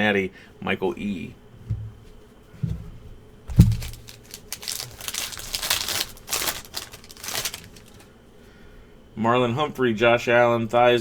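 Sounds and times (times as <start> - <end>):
cards thumping on table: 3.5 - 4.2
card pack wrapper tearing and crinkling: 3.5 - 8.1.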